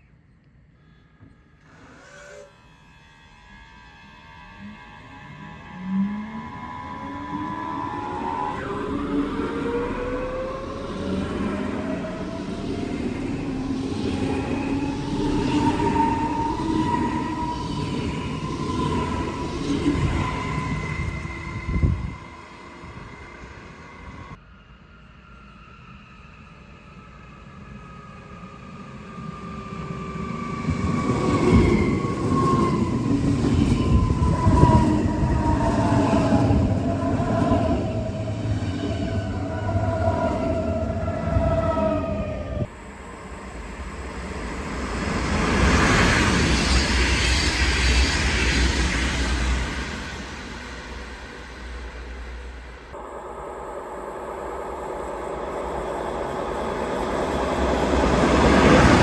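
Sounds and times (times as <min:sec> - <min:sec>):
falling whine: 0:01.7 - 0:59.0
train running noise: 0:02.0 - 0:59.0.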